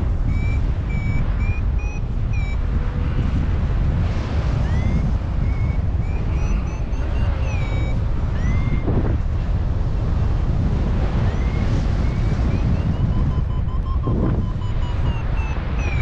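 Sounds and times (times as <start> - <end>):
wind buffeting microphone: 0.0 - 16.0
short high chirps: 5.5 - 8.8, 11.3 - 16.0.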